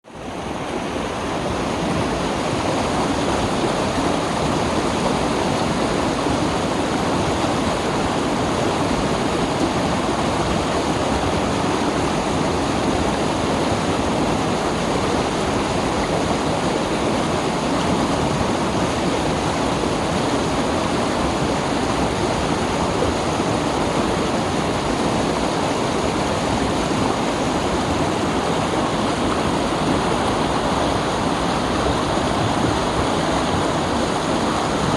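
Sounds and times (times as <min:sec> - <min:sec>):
stream rushing over rocks: 0:00.0 - 0:34.9.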